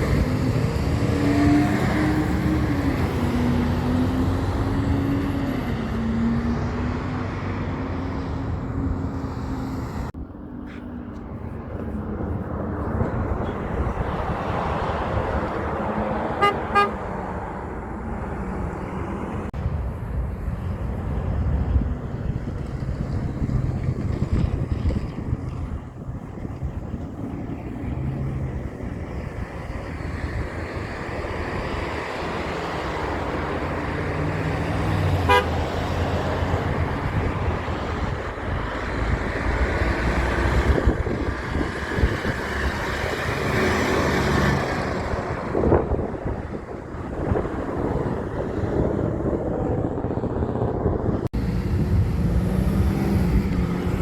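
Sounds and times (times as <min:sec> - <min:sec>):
heavy trucks passing: 0:00.0 - 0:54.0
short horn toot: 0:16.4 - 0:17.0, 0:35.3 - 0:35.6.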